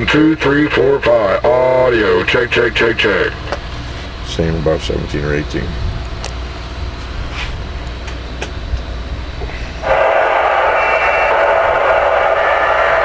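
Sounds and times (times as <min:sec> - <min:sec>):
radio static hiss: 0:00.0 - 0:03.6, 0:09.6 - 0:13.0
low electrical hum: 0:00.0 - 0:13.0.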